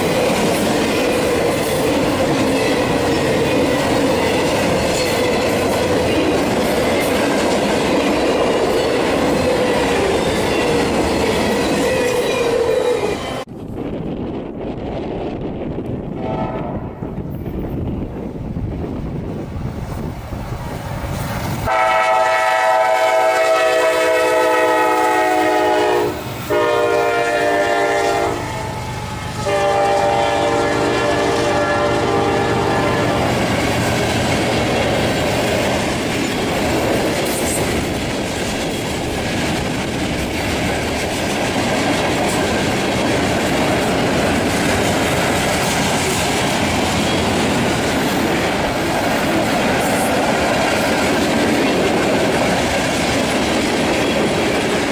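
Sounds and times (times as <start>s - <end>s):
wheels clacking on rail joints: 0.0s - 13.3s, 33.0s - 54.9s
train rumble: 0.0s - 54.9s
locomotive air horn: 16.2s - 16.9s, 21.7s - 33.3s.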